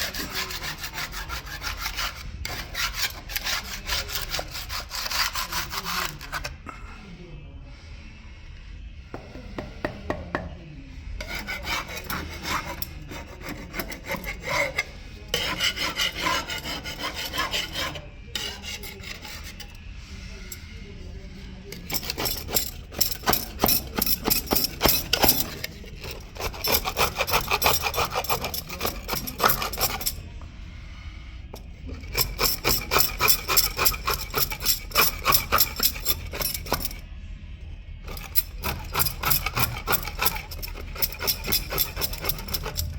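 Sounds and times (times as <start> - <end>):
scraping glue off stone: 38.1 - 42.9.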